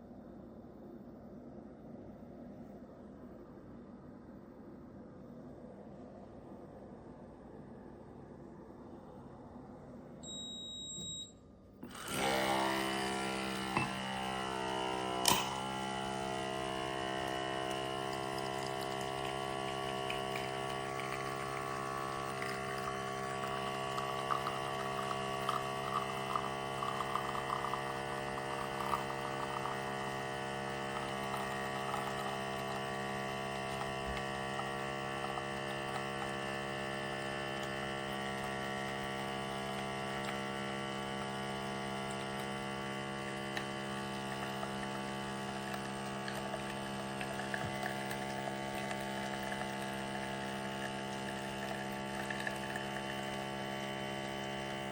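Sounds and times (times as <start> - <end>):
espresso machine pump humming: 11.8 - 54.9.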